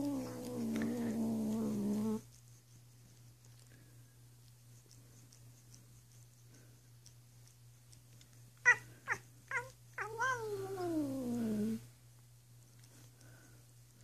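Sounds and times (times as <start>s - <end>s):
cat yelping: 8.6s - 11.7s.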